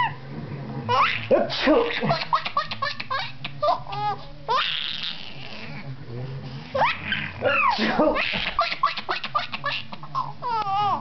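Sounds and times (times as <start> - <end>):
baby laughing: 0.9 - 5.6, 6.8 - 11.0.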